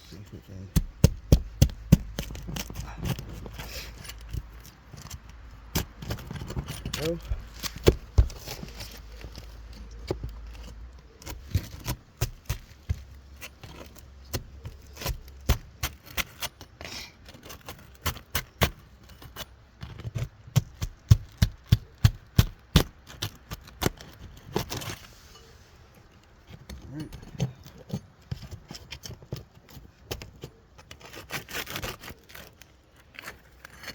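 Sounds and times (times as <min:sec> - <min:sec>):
shingles scraping and cracking: 0:00.1 - 0:33.9.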